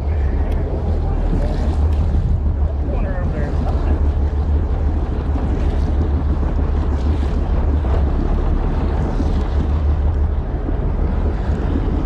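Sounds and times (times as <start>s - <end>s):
water noise: 0.0s - 12.0s
wind buffeting microphone: 0.0s - 12.0s.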